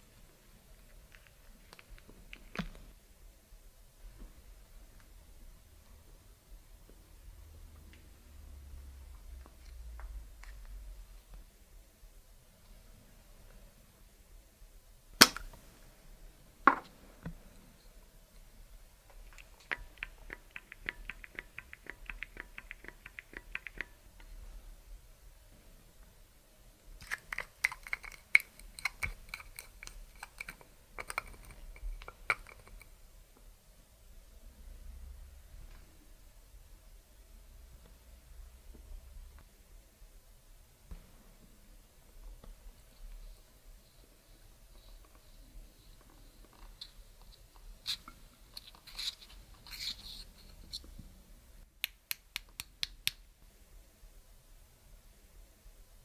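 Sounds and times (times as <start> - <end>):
sticky slime clicks and pops: 15.2 - 15.5.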